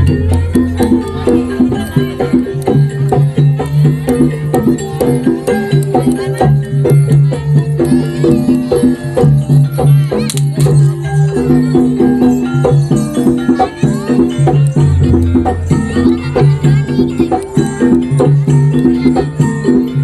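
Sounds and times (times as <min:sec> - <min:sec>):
percussion ensemble playing: 0:00.0 - 0:20.0.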